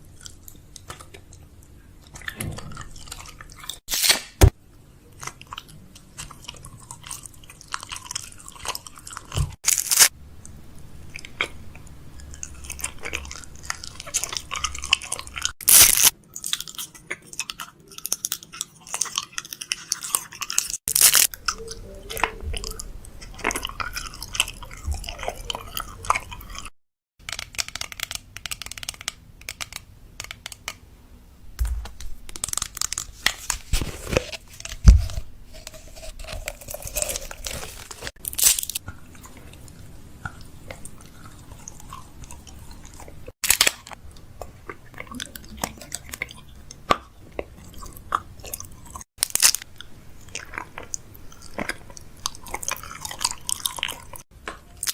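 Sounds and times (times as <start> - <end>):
plastic packaging crinkling: 20.9 - 21.4, 32.2 - 38.8.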